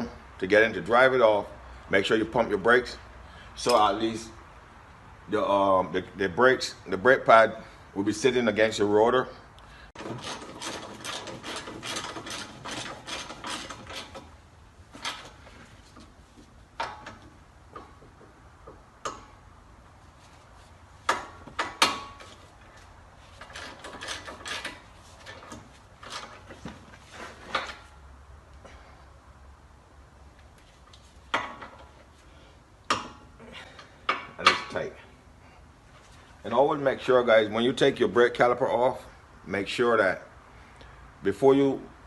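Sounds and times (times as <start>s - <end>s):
metal clanks: 10.0s - 16.1s, 16.7s - 19.4s, 21.0s - 22.5s, 32.8s - 35.0s.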